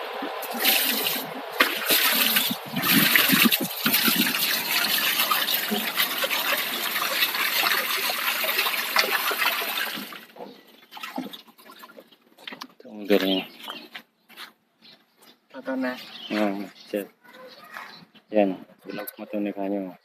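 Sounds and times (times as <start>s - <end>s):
water gushing from hose: 0.0s - 11.9s.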